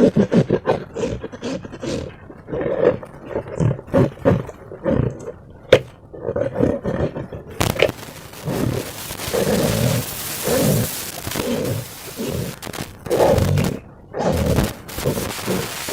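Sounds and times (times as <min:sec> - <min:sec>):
sharp snap: 0:07.6 - 0:08.6.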